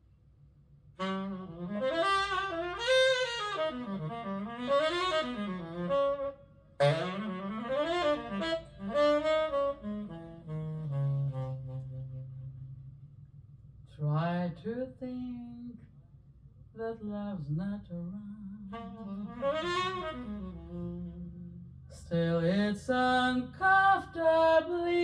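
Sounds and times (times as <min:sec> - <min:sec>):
saxophone melody: 0:00.9 - 0:13.0, 0:18.6 - 0:22.0.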